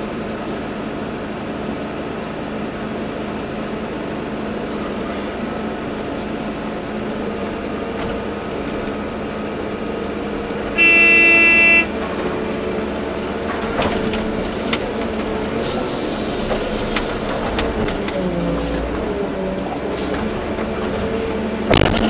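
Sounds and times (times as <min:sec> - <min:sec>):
excavator engine and hydraulics: 0:00.0 - 0:22.0
horn blast: 0:10.7 - 0:12.0.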